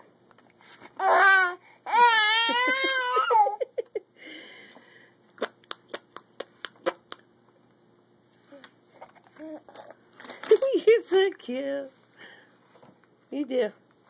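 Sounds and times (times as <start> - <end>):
baby crying: 1.0 - 3.6.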